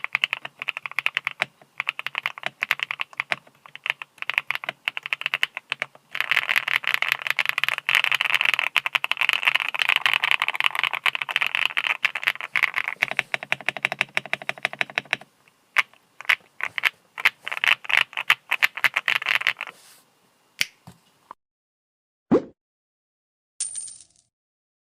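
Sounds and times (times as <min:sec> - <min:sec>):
mechanical keyboard typing: 0:00.0 - 0:19.7.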